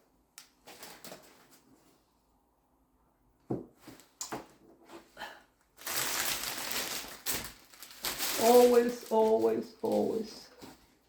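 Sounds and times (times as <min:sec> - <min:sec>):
dense rustling and crinkling: 0:05.8 - 0:11.0.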